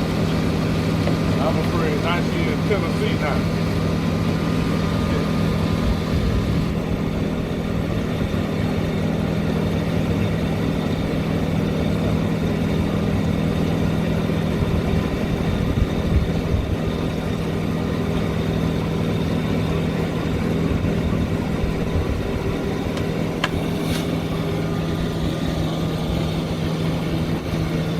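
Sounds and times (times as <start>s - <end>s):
heavy engine running: 0.0s - 27.9s.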